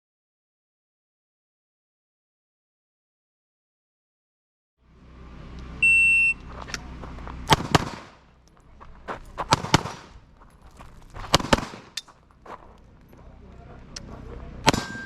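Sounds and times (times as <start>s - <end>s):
shot timer beep: 5.8s - 6.5s, 14.7s - 15.0s
pistol shots: 7.5s - 8.2s, 9.5s - 10.2s, 11.3s - 12.0s, 14.6s - 15.0s.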